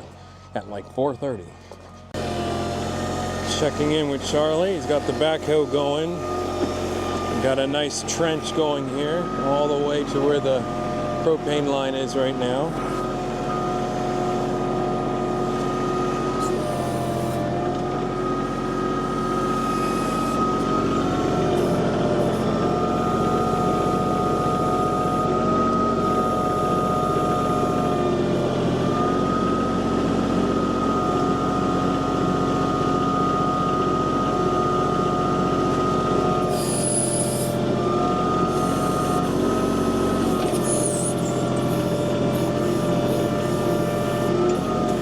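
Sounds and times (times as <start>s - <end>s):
tractor diesel engine whining: 0.0s - 45.0s.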